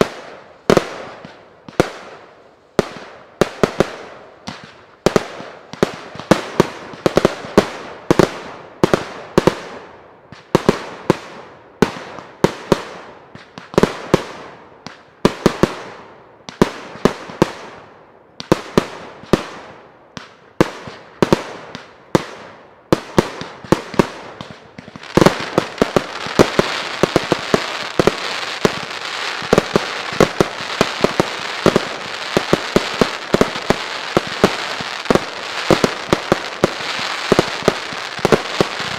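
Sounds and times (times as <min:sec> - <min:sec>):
firework bangs echoing: 0:00.0 - 0:38.9
crackling firework hiss: 0:24.2 - 0:38.9.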